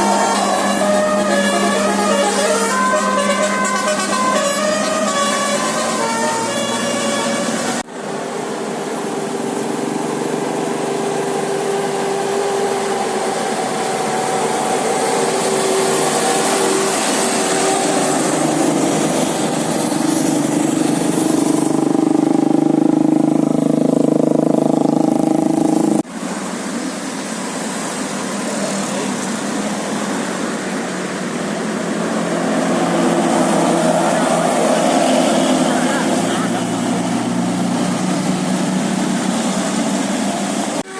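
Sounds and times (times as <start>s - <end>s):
road traffic passing: 0.0s - 40.9s.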